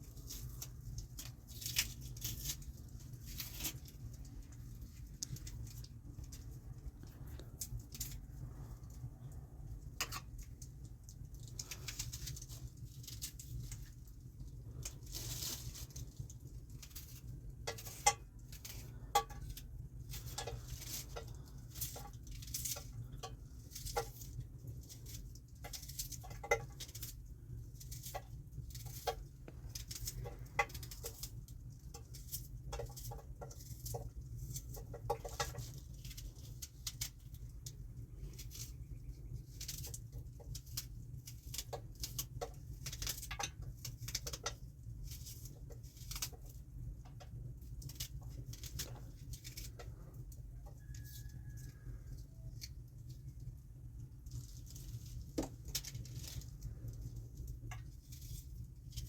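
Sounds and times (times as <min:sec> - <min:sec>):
steady low hum: 0:00.0 - 0:59.0.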